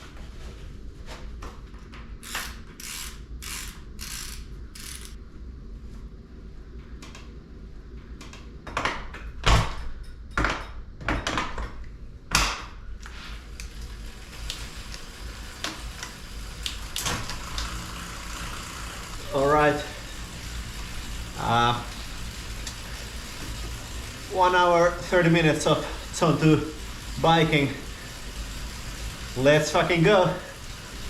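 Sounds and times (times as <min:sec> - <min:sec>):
mechanical clicking and ratcheting: 0:02.2 - 0:05.2.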